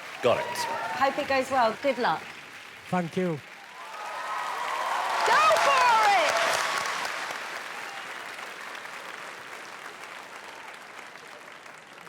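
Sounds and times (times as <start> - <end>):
audience applauding: 0.0 - 12.0.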